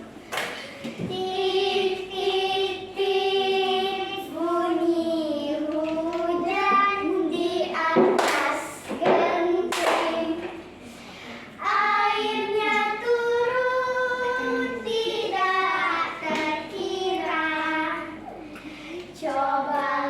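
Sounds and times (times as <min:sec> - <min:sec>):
children singing in unison: 0:00.9 - 0:10.6, 0:11.6 - 0:18.2, 0:19.1 - 0:20.0.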